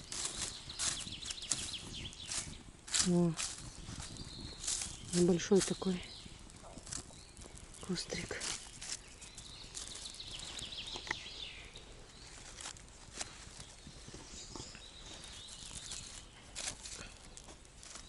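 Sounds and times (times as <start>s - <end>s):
songbird trilling: 0.0s - 12.8s
fire of dry leaves crackling: 0.0s - 18.0s.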